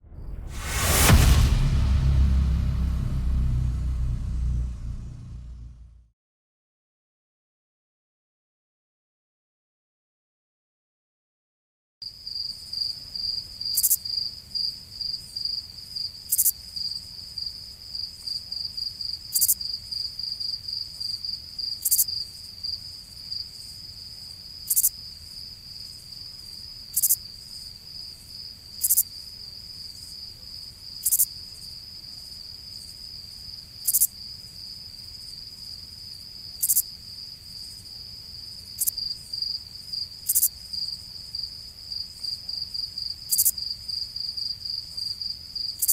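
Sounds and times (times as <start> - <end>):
loud sharp cricket chirp: 12.2 - 45.9.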